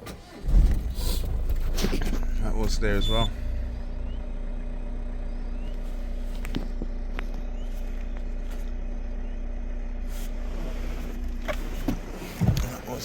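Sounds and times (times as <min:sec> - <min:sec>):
low engine hum: 0:00.2 - 0:13.0.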